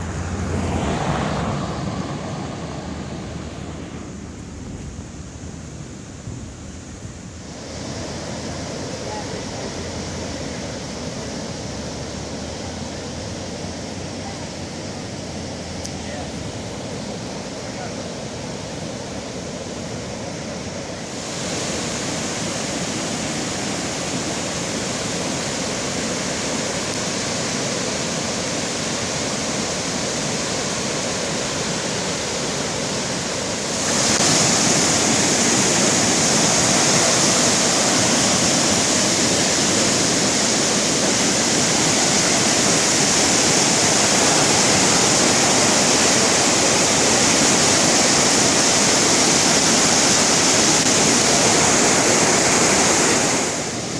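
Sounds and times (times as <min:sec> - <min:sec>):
flood water rushing: 0:00.0 - 0:53.9.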